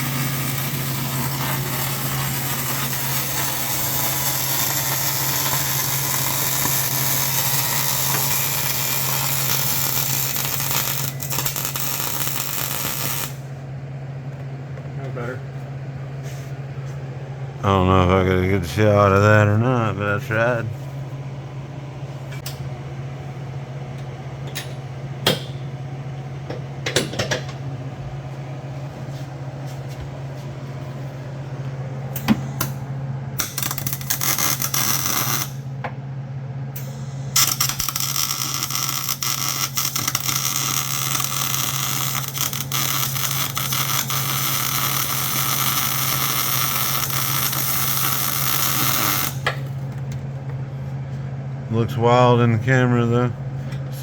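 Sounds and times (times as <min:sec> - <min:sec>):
welding arc crackling and hissing: 0:00.0 - 0:13.4, 0:33.4 - 0:35.6, 0:37.0 - 0:49.4
steady low hum: 0:00.0 - 0:54.0.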